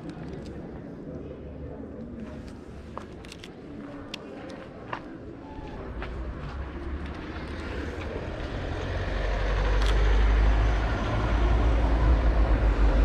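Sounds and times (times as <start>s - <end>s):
road noise: 5.2s - 13.0s
vehicle engine rumble: 5.4s - 13.0s.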